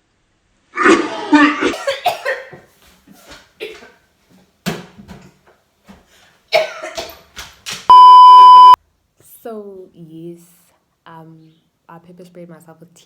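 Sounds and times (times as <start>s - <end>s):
woman coughing: 1.8s - 2.5s, 6.6s - 7.0s
high beep: 7.9s - 8.8s.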